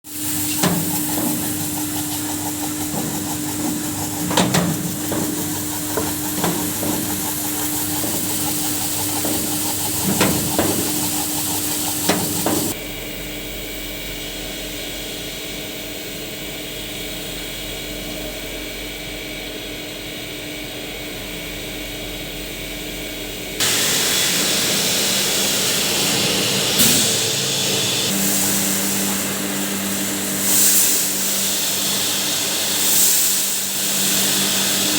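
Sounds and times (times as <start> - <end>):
washing machine motor running: 0.1 - 34.9
irregular knocks: 0.6 - 12.8.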